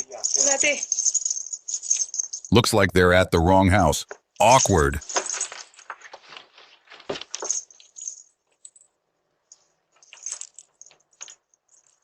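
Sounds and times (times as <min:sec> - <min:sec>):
light clicking and jingling: 0:00.0 - 0:02.5, 0:07.3 - 0:12.0.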